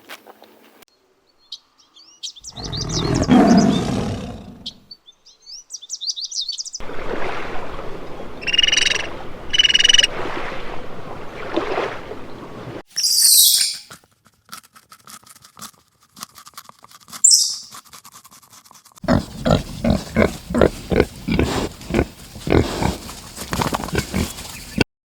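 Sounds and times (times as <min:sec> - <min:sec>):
rough animal calling: 0:02.4 - 0:04.8, 0:17.0 - 0:18.0, 0:19.0 - 0:24.8
animal roar: 0:02.5 - 0:04.7, 0:19.0 - 0:24.8
quick bird chirps: 0:13.0 - 0:14.0, 0:17.2 - 0:17.8, 0:19.4 - 0:24.8.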